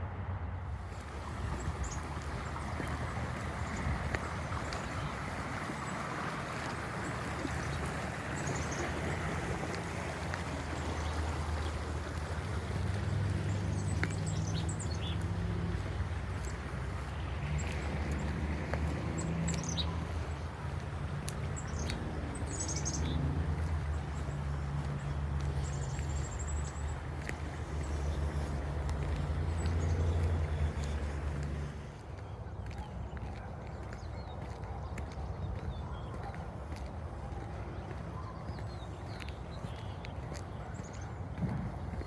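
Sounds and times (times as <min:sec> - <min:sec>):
songbirds chirping: 0:00.4 - 0:42.0
flowing water hissing: 0:00.9 - 0:31.8.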